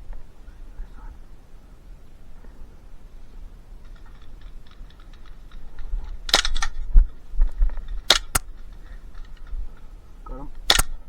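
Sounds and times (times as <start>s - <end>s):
rustling: 0.0s - 11.0s
airsoft gun cracks: 3.8s - 6.9s, 7.8s - 9.6s, 10.6s - 11.0s.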